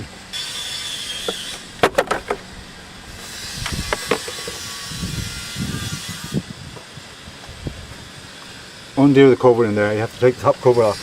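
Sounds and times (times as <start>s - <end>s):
sharp clicks and knocks: 1.3s - 2.4s, 3.6s - 4.6s.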